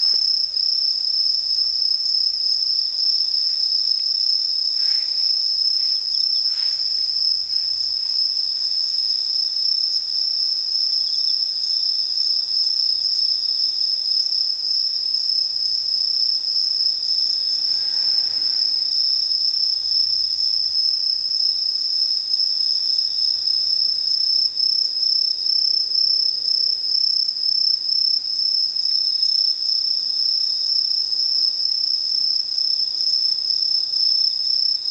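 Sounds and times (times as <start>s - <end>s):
fainter lower insect song: 0.0s - 34.9s
insects high-pitched trilling: 0.0s - 34.9s.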